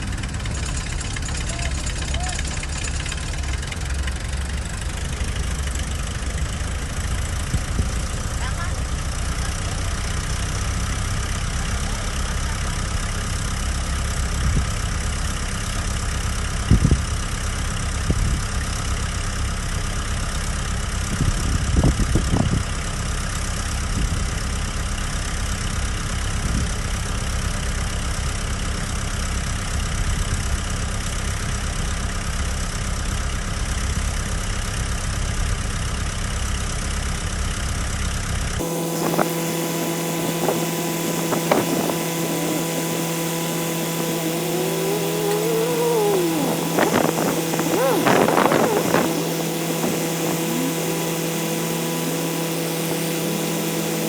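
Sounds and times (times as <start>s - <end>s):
heavy diesel engine running: 38.6s - 54.0s.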